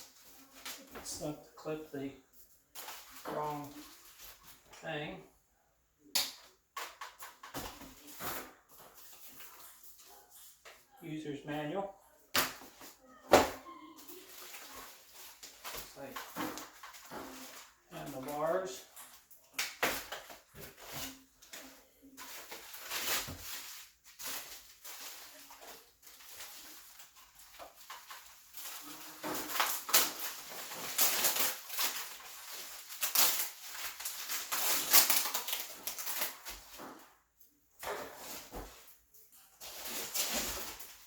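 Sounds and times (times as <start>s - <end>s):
packaging rustling and scraping: 2.7s - 4.7s, 14.0s - 37.2s, 37.9s - 41.0s.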